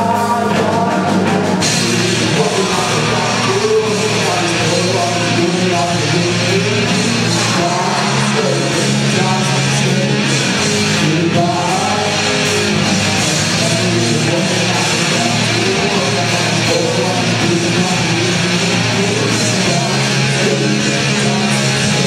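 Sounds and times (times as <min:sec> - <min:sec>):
rock music with electric guitar: 0:00.0 - 0:22.0.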